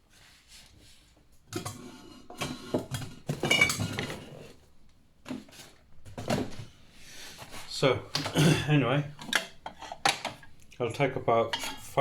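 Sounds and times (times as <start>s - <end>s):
metal cookware clattering: 1.5s - 4.4s, 9.2s - 10.6s, 11.3s - 12.0s.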